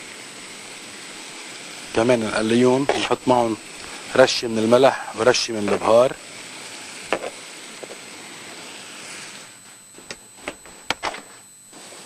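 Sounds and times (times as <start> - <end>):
chicken sizzling in a pan: 0.0 - 9.6.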